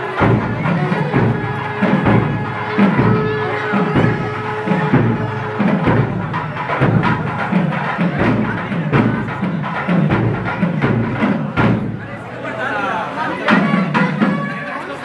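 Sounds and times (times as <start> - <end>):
held musical note: 0.0 - 7.1
drums beating steadily: 0.0 - 15.0.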